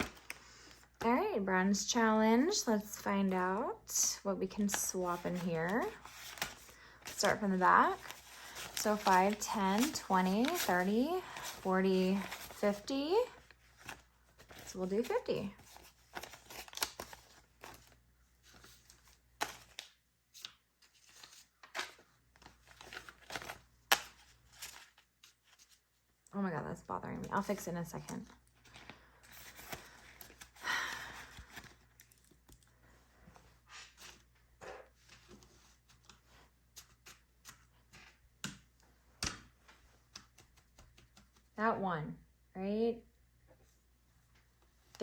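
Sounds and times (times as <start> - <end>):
banknotes rustling: 2.7 - 26.0, 27.1 - 38.7.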